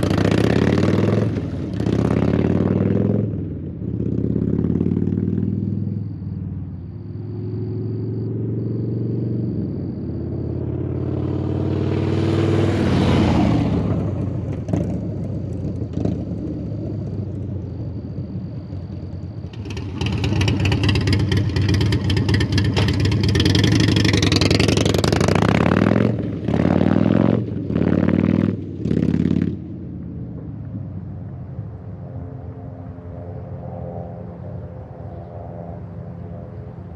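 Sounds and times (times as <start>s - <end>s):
motorcycle engine revving: 0.0s - 6.1s, 7.2s - 30.0s.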